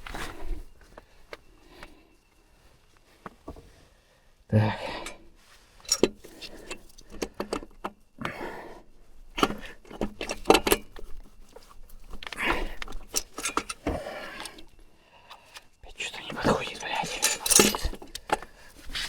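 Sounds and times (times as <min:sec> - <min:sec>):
metal parts and tools clinking: 0:05.8 - 0:08.0, 0:09.4 - 0:11.2, 0:12.0 - 0:14.7, 0:15.3 - 0:19.0.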